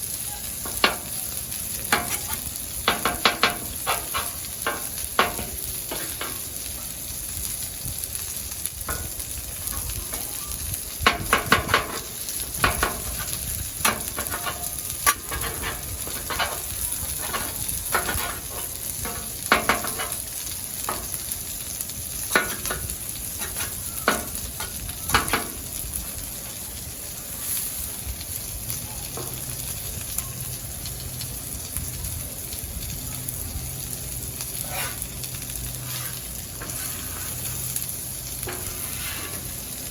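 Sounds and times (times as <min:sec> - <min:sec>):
food sizzling on griddle: 0:00.0 - 0:39.9
metal spatula scraping griddle: 0:00.6 - 0:01.2, 0:01.8 - 0:06.6, 0:08.9 - 0:10.3, 0:11.0 - 0:25.7, 0:27.4 - 0:27.8, 0:34.4 - 0:39.9.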